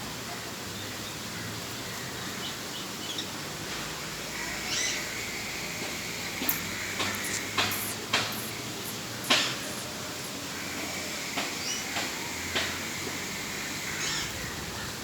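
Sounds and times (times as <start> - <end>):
steady outdoor noise: 0.0 - 15.0
birds chirping: 2.3 - 14.9.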